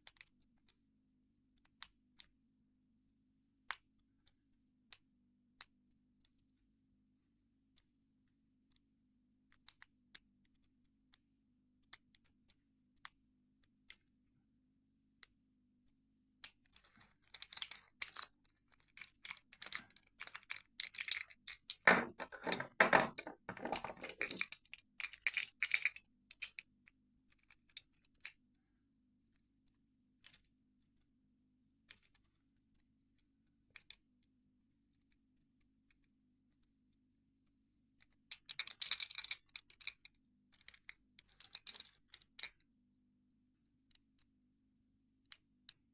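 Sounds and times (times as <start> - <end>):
lock picks clicking in padlock: 17.4 - 18.3, 19.0 - 26.6.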